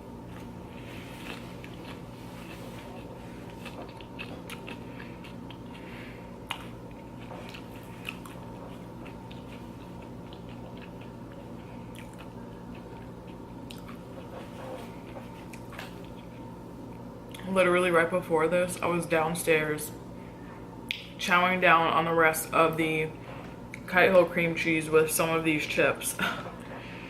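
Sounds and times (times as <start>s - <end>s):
steady low hum: 0.0s - 27.0s
chewing crunchy chips: 0.2s - 17.5s.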